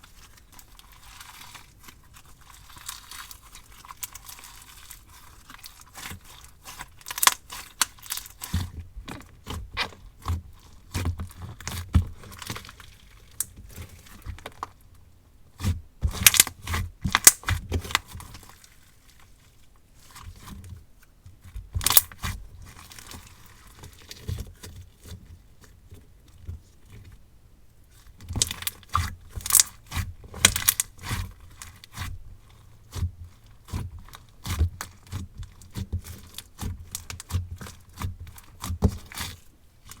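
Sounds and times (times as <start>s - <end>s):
sticky clicks and crackling pops: 7.1s - 8.0s, 21.8s - 22.1s, 30.4s - 30.9s
slime being squished by hand: 28.3s - 32.1s.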